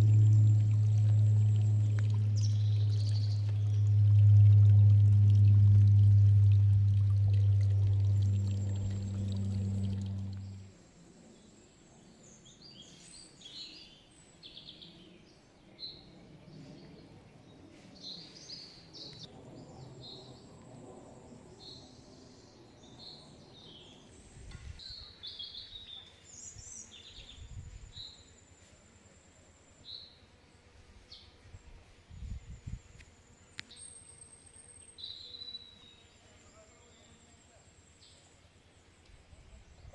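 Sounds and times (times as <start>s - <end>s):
low rumbles: 0.0s - 10.7s.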